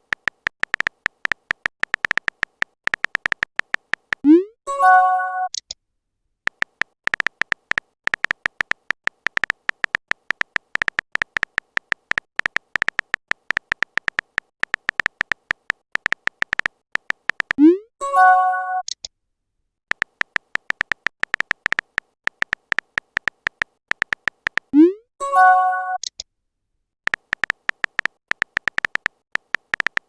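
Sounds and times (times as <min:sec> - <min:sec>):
phone keyboard typing clicks: 0:00.0 - 0:04.3, 0:06.5 - 0:17.7, 0:18.6 - 0:19.1, 0:19.9 - 0:24.7, 0:27.1 - 0:30.0.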